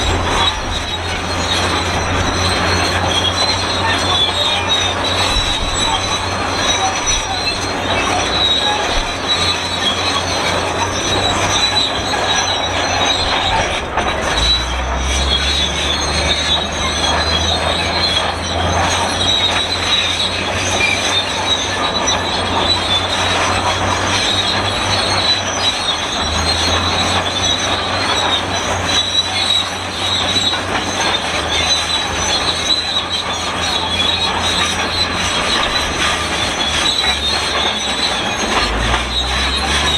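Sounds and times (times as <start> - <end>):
low engine drone: 0.0 - 19.5
bulldozer squealing metal-on-metal: 0.0 - 39.9.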